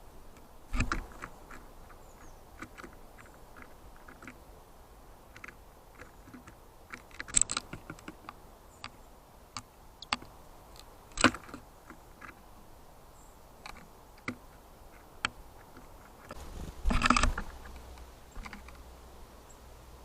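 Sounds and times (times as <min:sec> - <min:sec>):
bird pecking on plastic housing: 0:00.3 - 0:04.4, 0:05.2 - 0:09.0, 0:09.6 - 0:12.4, 0:13.6 - 0:18.8.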